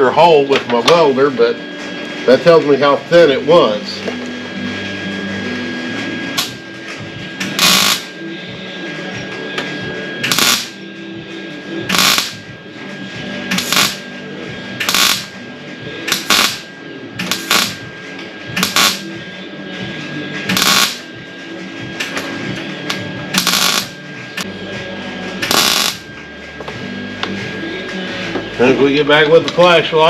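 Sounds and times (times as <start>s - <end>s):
welder crackling bursts: 6.4s - 6.6s, 7.4s - 8.1s, 10.2s - 10.8s, 11.9s - 12.5s, 13.5s - 14.0s, 14.8s - 15.3s, 16.1s - 17.8s, 18.6s - 19.1s, 20.5s - 21.1s, 23.4s - 24.0s, 25.4s - 26.0s.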